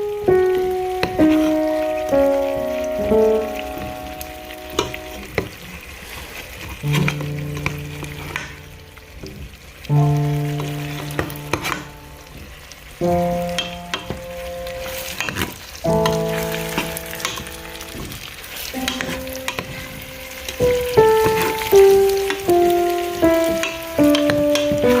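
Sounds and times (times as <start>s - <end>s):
slow music with sustained chords: 0.0s - 5.4s, 6.9s - 9.3s, 10.0s - 15.2s, 16.0s - 25.0s
food sizzling in a pan: 0.0s - 25.0s
stirring clicks: 6.7s - 12.5s, 13.1s - 25.0s.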